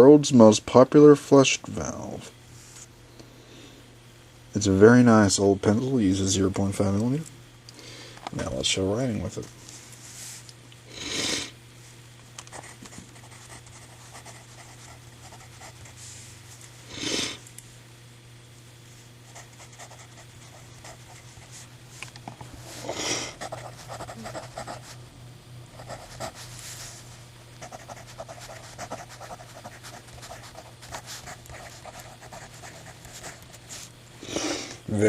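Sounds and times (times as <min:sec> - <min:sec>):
steady low hum: 0:00.0 - 0:35.0
pencil scratching on paper: 0:12.5 - 0:16.0, 0:19.3 - 0:21.6, 0:23.4 - 0:25.0, 0:25.8 - 0:26.5, 0:27.6 - 0:33.9
loud sniff: 0:16.9 - 0:17.4, 0:34.2 - 0:34.8.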